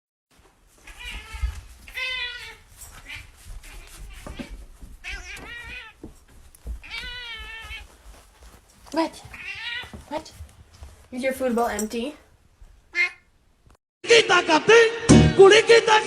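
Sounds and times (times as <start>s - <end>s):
cat meowing: 0.8s - 6.0s, 6.8s - 7.9s, 9.3s - 10.0s, 12.9s - 13.3s.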